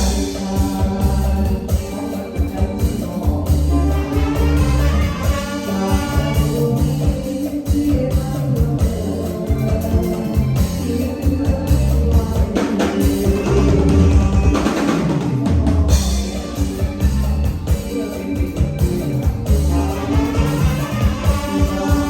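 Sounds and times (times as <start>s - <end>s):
band music with drum beat: 0.0s - 22.0s.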